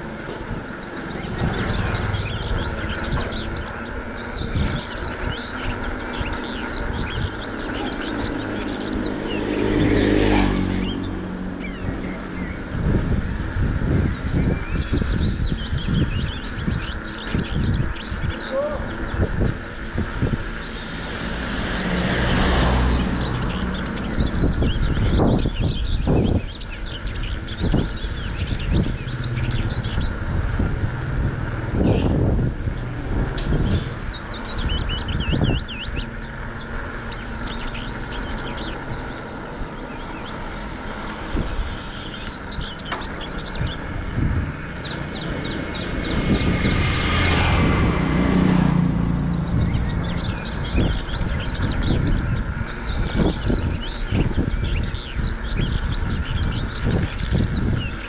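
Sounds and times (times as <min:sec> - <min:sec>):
small birds chirping: 0:00.0 - 0:58.0
bicycle tyres rolling on road: 0:19.0 - 0:48.6.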